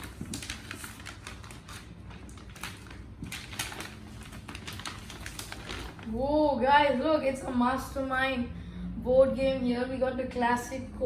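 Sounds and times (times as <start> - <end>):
gift wrap crackling and tearing: 0.0 - 6.1.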